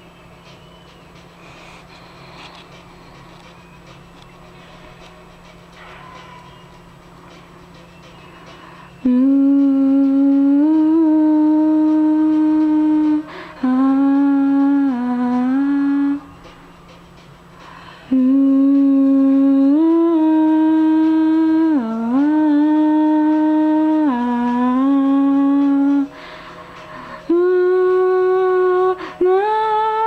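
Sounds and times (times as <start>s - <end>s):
person humming a melody: 8.9s - 16.4s, 17.9s - 26.2s, 27.0s - 30.0s.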